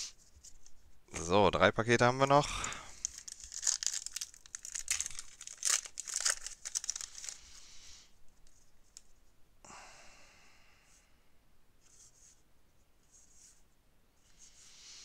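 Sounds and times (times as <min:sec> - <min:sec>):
wrapper being torn and crinkled: 0:02.9 - 0:07.4
wrapper rustling: 0:02.9 - 0:07.6.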